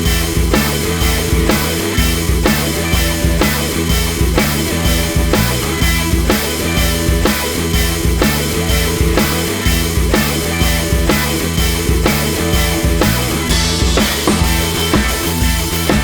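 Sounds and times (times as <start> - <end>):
rock music with drums and guitar: 0.0 - 16.0.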